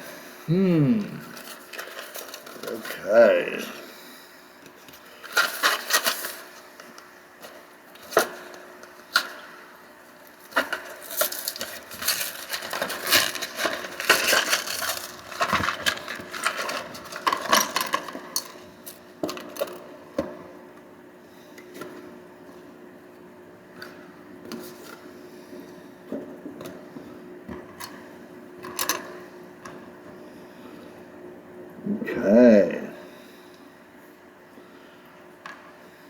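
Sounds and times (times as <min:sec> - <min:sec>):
clicks and cracks: 0:10.5 - 0:19.8.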